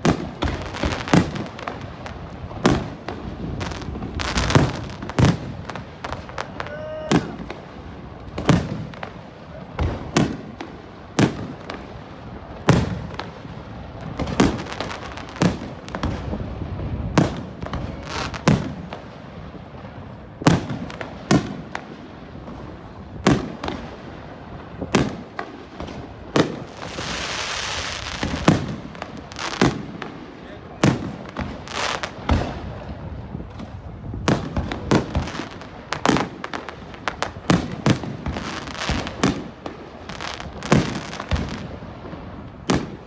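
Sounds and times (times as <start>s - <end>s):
fireworks crackling: 0.0s - 43.0s.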